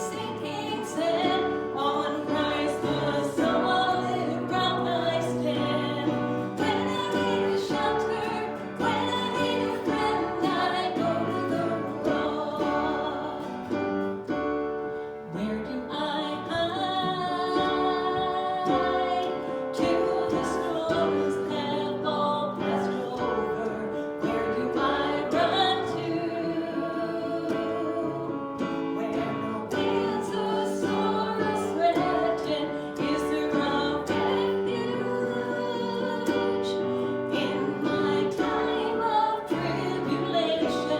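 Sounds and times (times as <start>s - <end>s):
guitar accompaniment: 0.0s - 40.9s
voices singing: 0.0s - 40.9s.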